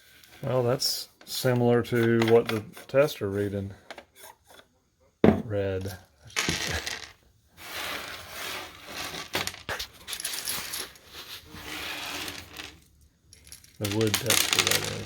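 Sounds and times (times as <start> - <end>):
corn kernels clattering: 7.7 - 11.0, 13.4 - 15.0.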